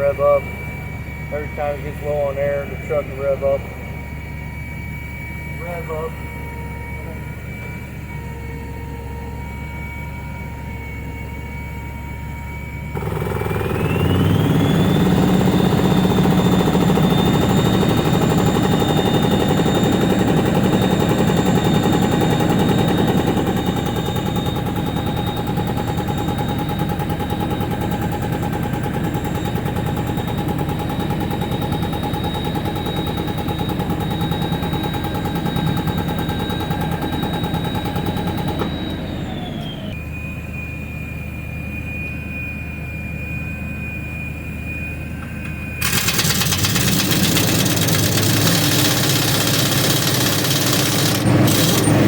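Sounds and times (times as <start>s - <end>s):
truck engine revving with whine: 0.0s - 42.4s, 43.3s - 52.0s
fast rattle: 45.8s - 52.0s.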